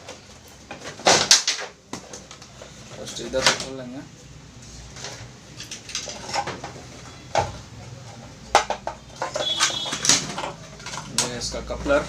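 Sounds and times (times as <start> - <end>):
appliance parts clicking and knocking: 5.6 - 11.7.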